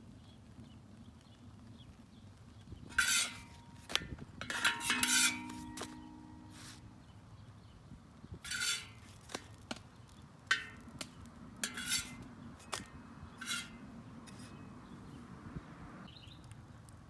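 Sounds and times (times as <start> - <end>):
utensil scraping on steel griddle: 2.9 - 6.9, 8.4 - 9.8, 10.5 - 15.2.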